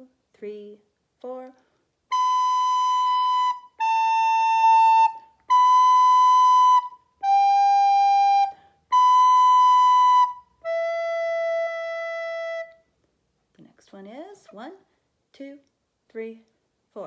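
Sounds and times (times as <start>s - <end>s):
recorder playing held notes: 2.1s - 12.8s.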